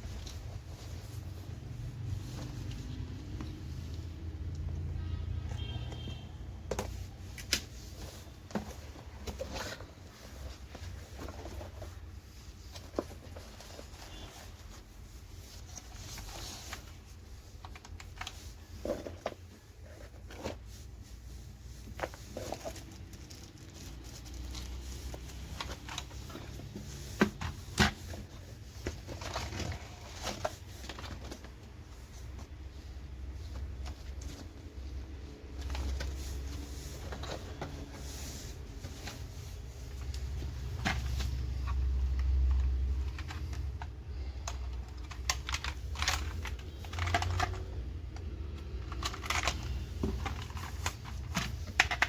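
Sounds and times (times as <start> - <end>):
packaging rustling and tapping: 21.8 - 52.0.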